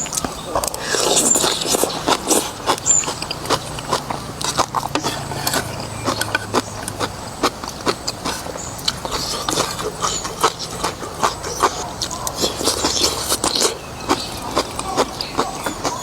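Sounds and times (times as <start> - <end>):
person chewing with wet mouth clicks: 0.0 - 16.0.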